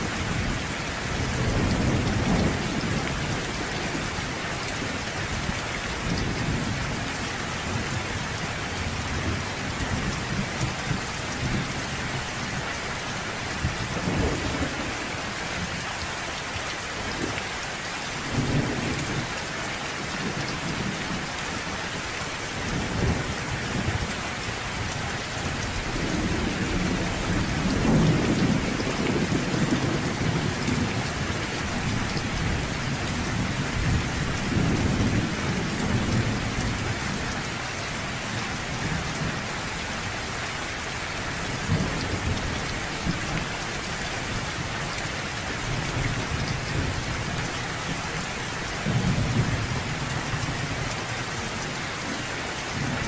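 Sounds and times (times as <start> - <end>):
thunder rumbling: 0.0 - 5.0, 13.5 - 15.8, 24.7 - 37.3
rain falling: 0.0 - 53.0.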